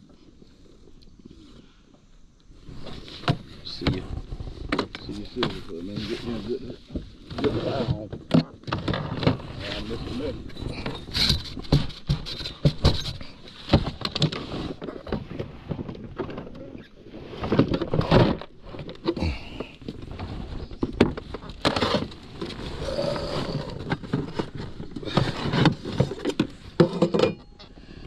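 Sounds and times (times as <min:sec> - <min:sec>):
knocks and bumps: 0:03.2 - 0:16.8.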